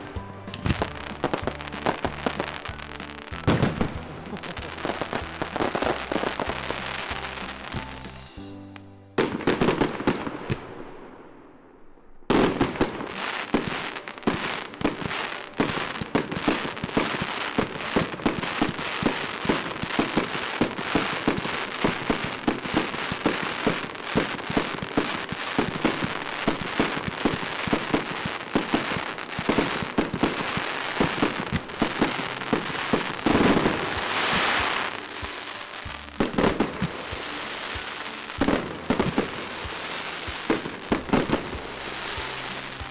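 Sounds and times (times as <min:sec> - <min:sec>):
rapid crackle of firecracker pops: 0:12.3 - 0:42.9.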